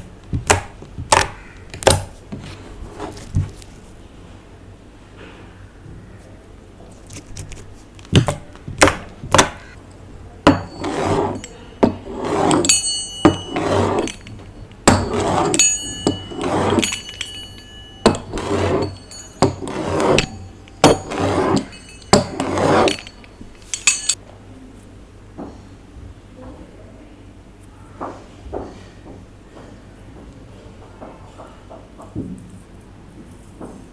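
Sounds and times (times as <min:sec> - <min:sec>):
utensil clinking against container: 0:10.5 - 0:24.2.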